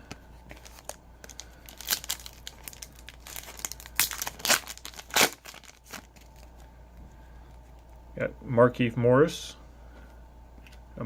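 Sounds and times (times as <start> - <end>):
foil wrapper crinkling and tearing: 0.5 - 6.7.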